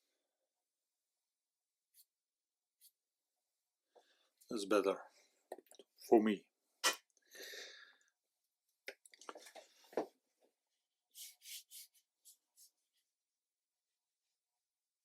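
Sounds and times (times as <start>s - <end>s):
brush strokes on paper: 1.9s - 2.2s, 2.8s - 3.0s, 11.1s - 13.1s.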